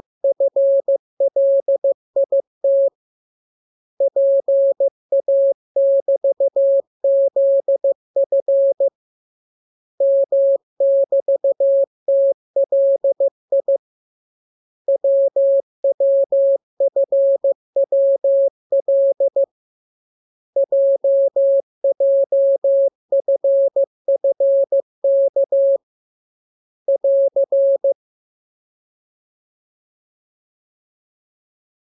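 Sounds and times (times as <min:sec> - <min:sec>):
morse code tone: 0:00.2 - 0:02.9, 0:14.9 - 0:19.5, 0:20.6 - 0:25.8, 0:26.9 - 0:28.0.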